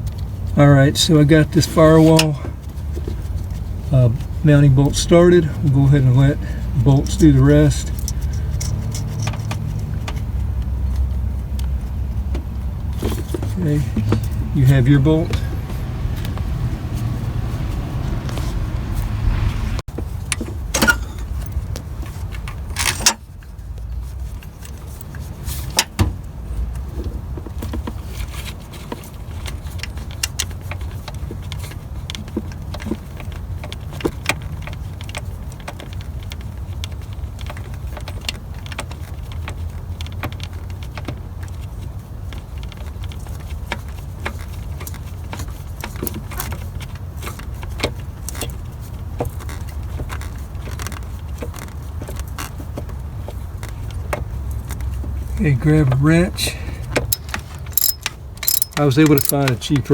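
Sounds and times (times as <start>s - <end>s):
metal clicks and clinks: 57.1s - 59.9s.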